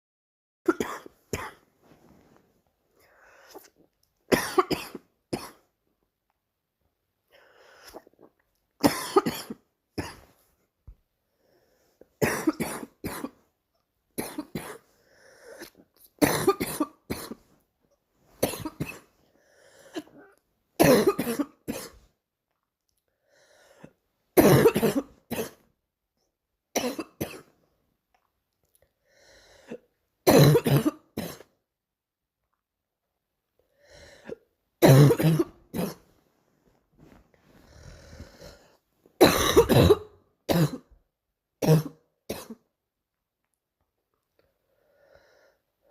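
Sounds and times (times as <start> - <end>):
girl coughing: 0.7 - 1.6, 4.3 - 5.6, 8.8 - 10.3, 12.2 - 13.4, 15.6 - 17.4, 18.4 - 19.1, 20.0 - 22.0, 24.4 - 25.6, 30.3 - 31.5, 34.8 - 36.0, 39.2 - 41.0, 41.6 - 42.6.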